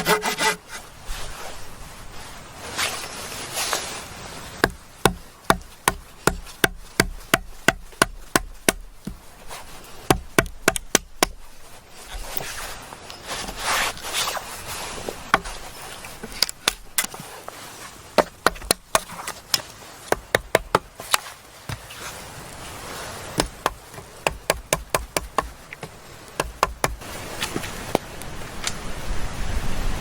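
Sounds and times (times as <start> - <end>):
sharp wooden knocks: 4.6 - 9.3, 10.1 - 11.5, 18.2 - 21.8, 23.4 - 27.0.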